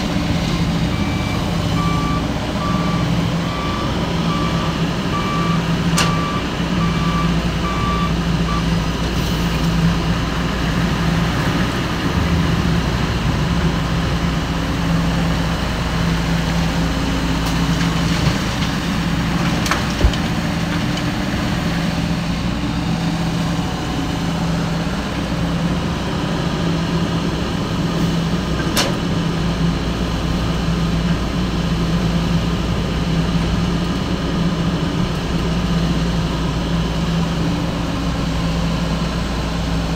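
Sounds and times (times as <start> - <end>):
diesel engine running: 0.0 - 39.9
reversing alarm beeping: 0.9 - 8.8.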